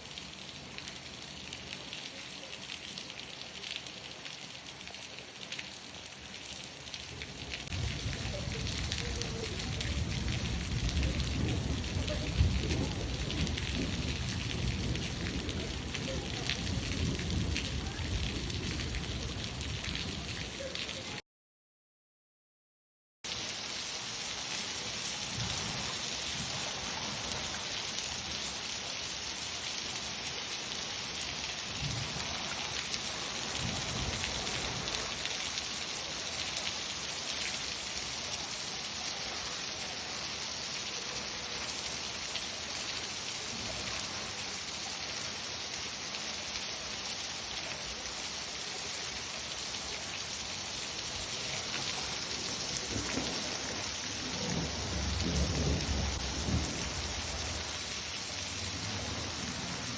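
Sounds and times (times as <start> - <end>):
heavy rain falling: 0.0 - 21.2, 23.3 - 59.9
low rumbles of thunder: 7.7 - 20.6, 31.7 - 35.2, 52.0 - 59.9.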